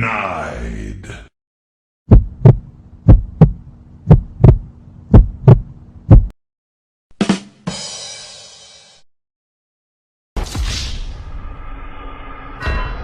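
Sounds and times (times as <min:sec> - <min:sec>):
heartbeat thumps: 0:02.1 - 0:06.4.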